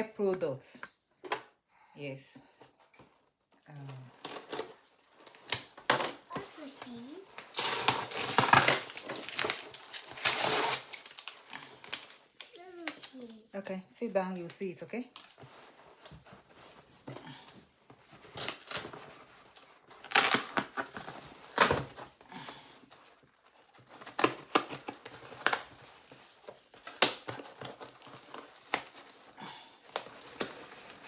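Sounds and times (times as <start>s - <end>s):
packaging tearing and crinkling: 4.1s - 13.4s, 18.2s - 22.4s, 23.4s - 31.0s.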